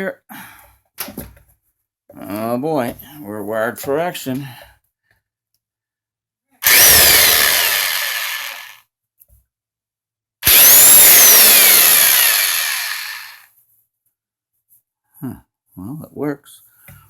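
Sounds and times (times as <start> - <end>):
impact wrench motor whining: 6.6 - 8.8, 10.4 - 13.5.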